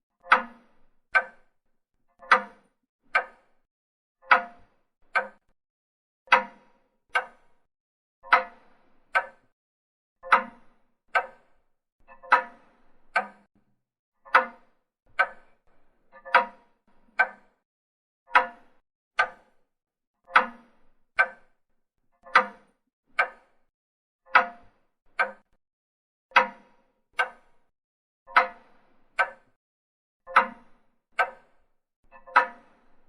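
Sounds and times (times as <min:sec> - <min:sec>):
clock ticking: 0:00.3 - 0:00.6, 0:01.2 - 0:01.5, 0:02.2 - 0:03.5, 0:04.3 - 0:05.5, 0:06.3 - 0:07.5, 0:08.3 - 0:09.4, 0:10.2 - 0:10.6, 0:12.1 - 0:13.5, 0:15.2 - 0:15.4, 0:16.2 - 0:16.6, 0:17.2 - 0:17.6, 0:18.3 - 0:18.6, 0:19.2 - 0:19.5, 0:20.3 - 0:20.6, 0:21.2 - 0:21.5, 0:22.3 - 0:23.5, 0:24.4 - 0:25.6, 0:26.4 - 0:26.6, 0:27.2 - 0:27.5, 0:29.2 - 0:29.5, 0:30.3 - 0:30.6, 0:32.1 - 0:32.6.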